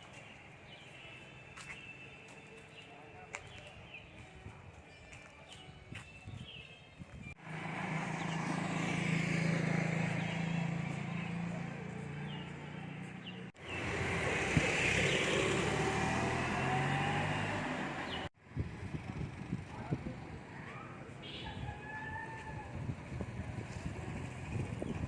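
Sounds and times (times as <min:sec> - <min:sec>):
road or wind noise: 0:05.8 - 0:25.0.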